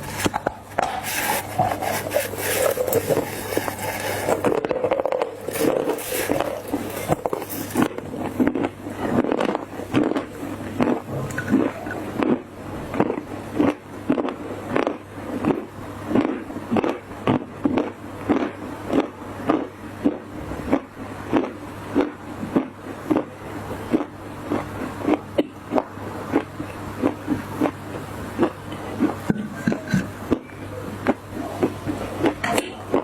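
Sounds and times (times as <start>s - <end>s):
dry clay crunching: 0.0s - 11.0s.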